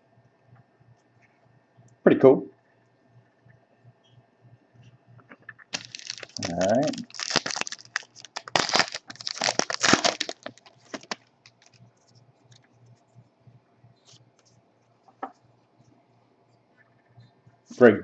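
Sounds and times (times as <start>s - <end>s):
foil wrapper tearing and crinkling: 5.7s - 11.8s.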